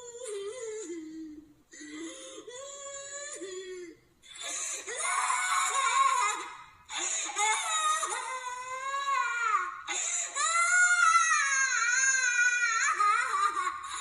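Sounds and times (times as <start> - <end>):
person crying in wails: 4.9 - 14.0
short gasps for breath: 9.9 - 10.4.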